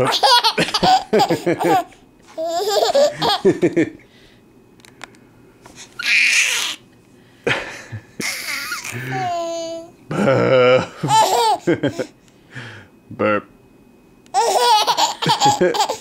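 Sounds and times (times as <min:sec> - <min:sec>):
baby laughing: 0:00.0 - 0:03.5, 0:06.0 - 0:06.8, 0:08.2 - 0:09.9, 0:11.0 - 0:12.1, 0:14.3 - 0:16.0.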